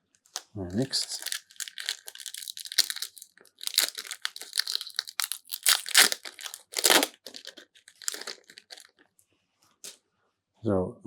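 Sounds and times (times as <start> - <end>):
wrapper rustling and crackling: 0.4 - 9.0.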